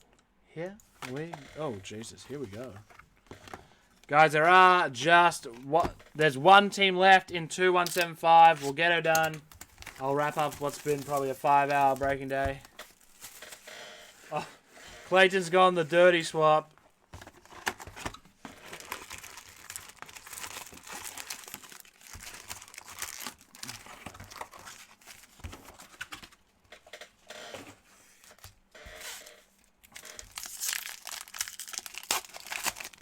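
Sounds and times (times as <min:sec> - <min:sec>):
plastic wrapping crinkling and tearing: 0:07.9 - 0:13.7, 0:17.3 - 0:26.4, 0:29.8 - 0:33.0.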